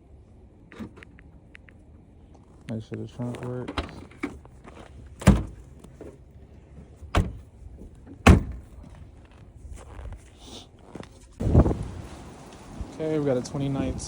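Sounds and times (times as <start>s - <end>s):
car trunk latch thumps: 5.2s - 5.6s, 7.1s - 7.5s, 8.2s - 8.8s.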